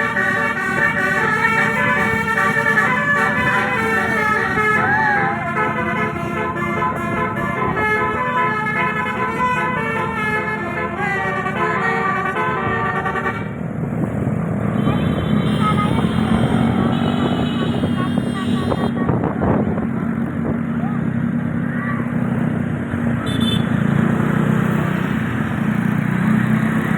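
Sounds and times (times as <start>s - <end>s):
voices: 0.0s - 13.0s, 14.7s - 22.4s
bus air horn melody: 0.0s - 13.7s, 14.7s - 19.2s, 23.2s - 23.8s
engine humming: 0.0s - 26.9s.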